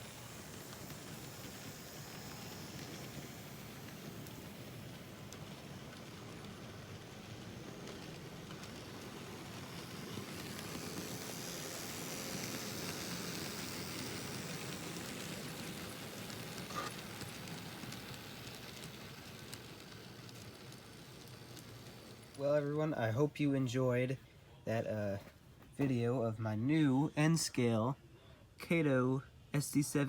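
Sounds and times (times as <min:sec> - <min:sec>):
model train rumbling whir: 0:00.0 - 0:23.7.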